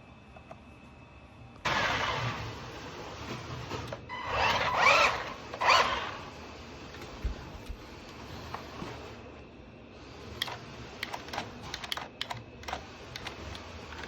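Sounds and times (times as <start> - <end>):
toy car electric motor whirring: 1.7 - 2.5, 4.1 - 6.3.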